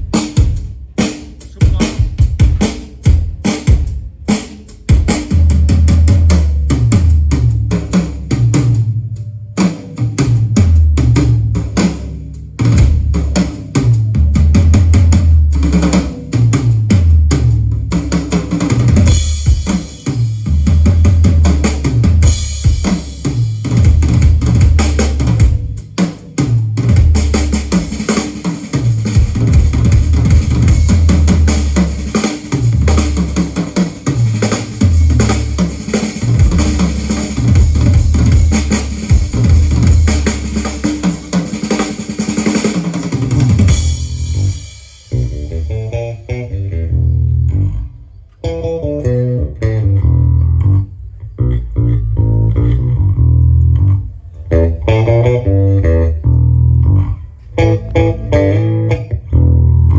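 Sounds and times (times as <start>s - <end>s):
drum-heavy music through speaker: 0.0s - 9.0s, 9.6s - 46.4s, 57.6s - 59.0s.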